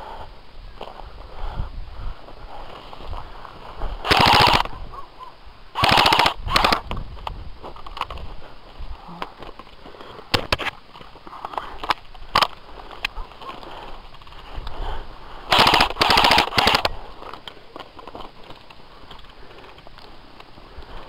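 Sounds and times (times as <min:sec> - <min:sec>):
airsoft gun shots: 0:04.0 - 0:04.7, 0:05.8 - 0:06.9, 0:15.5 - 0:17.0.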